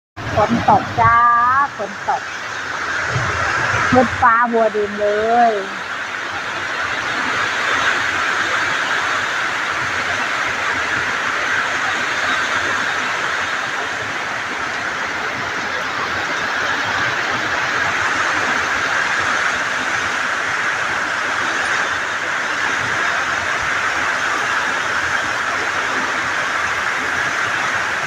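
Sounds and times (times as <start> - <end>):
heavy rain pouring: 0.2 - 28.0.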